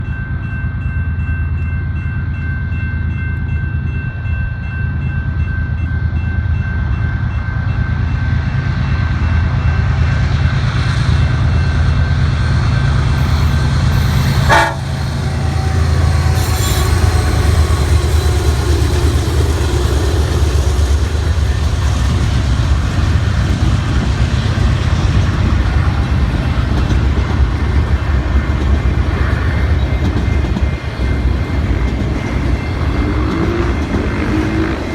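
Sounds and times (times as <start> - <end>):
diesel locomotive engine rumble: 0.0 - 34.9
locomotive air horn: 13.2 - 21.1.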